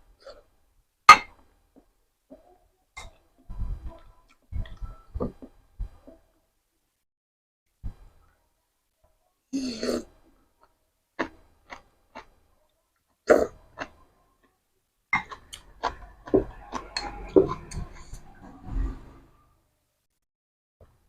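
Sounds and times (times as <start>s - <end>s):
person slurping and chewing: 15.2s - 18.9s.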